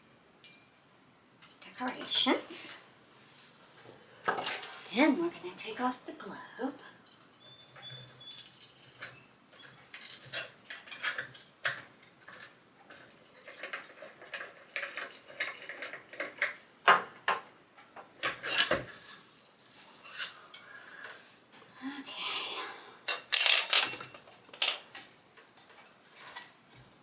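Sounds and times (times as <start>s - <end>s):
glass globe and metal clinking: 0.4s - 0.8s, 23.1s - 25.0s.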